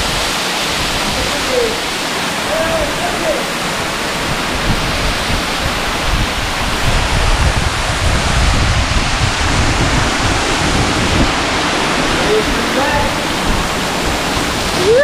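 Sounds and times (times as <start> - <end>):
waterfall rushing: 0.0 - 15.0
heavy low rumble: 4.4 - 14.2.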